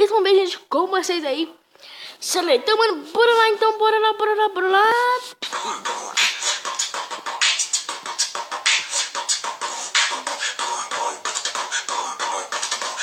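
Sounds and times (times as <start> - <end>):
person beatboxing: 5.3 - 13.0.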